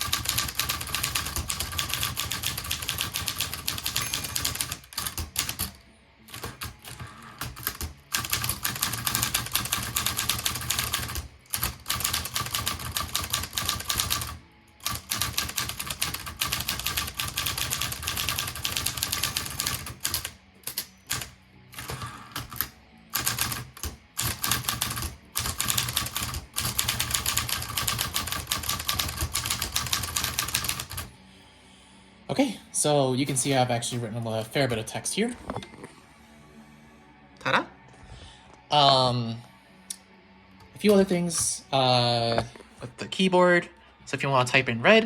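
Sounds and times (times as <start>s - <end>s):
manual typewriter typing: 0.0s - 31.1s.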